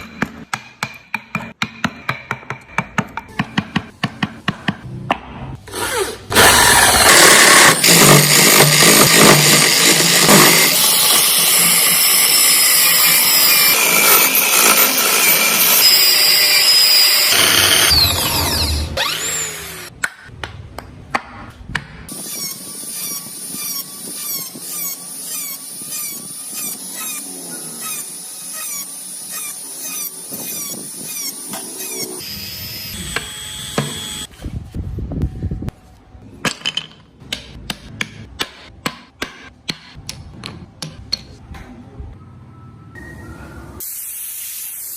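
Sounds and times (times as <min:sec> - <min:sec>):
loud grinding power tool: 0:05.7 - 0:19.9, 0:22.1 - 0:34.3.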